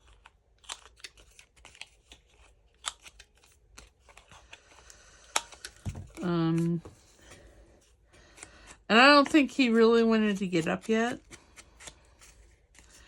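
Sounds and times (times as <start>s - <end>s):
paper handling: 8.1s - 13.0s
card cutting snips: 10.8s - 12.9s.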